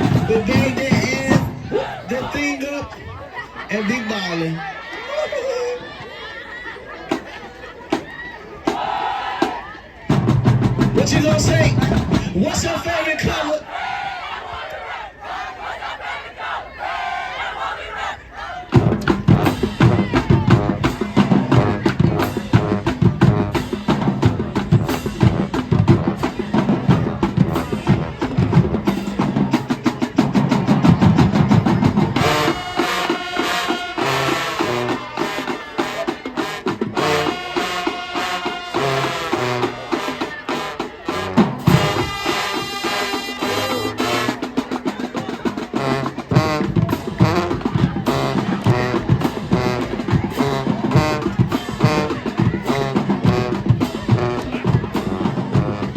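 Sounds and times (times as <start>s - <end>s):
brass playing punchy phrases: 0.0s - 2.4s, 18.7s - 44.8s, 45.4s - 55.9s
snare and bass drums: 0.0s - 2.8s, 8.7s - 13.4s, 18.7s - 55.9s.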